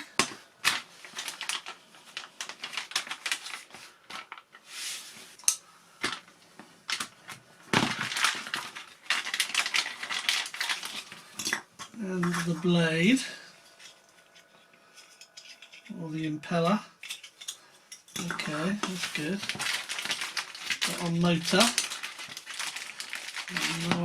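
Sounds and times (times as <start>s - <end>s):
packaging crinkling: 0.0s - 4.5s, 6.9s - 11.6s, 18.2s - 24.0s
plastic parts clicking and tapping: 6.9s - 12.5s.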